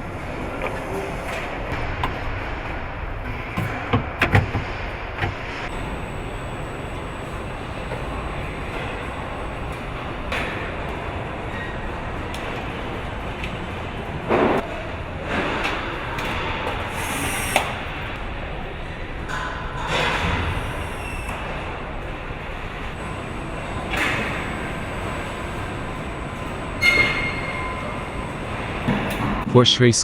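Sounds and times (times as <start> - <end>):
machinery hum: 0.0 - 30.0
air hisses: 16.8 - 18.0.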